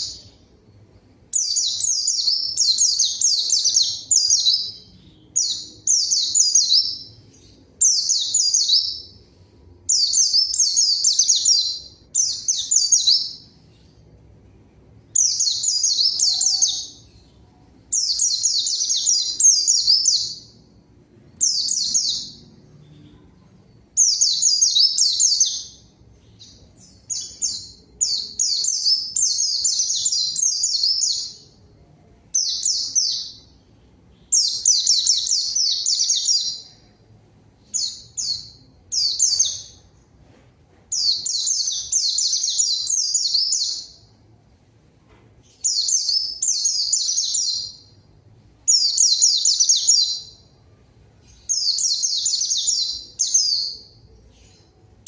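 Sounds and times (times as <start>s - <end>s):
bird twittering song: 1.3s - 9.3s, 15.1s - 20.7s, 21.4s - 31.6s, 37.6s - 40.0s, 51.2s - 54.8s.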